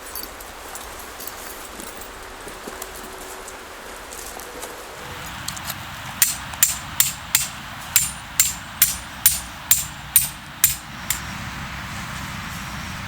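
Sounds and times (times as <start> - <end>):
hammer strikes: 6.2 - 11.2.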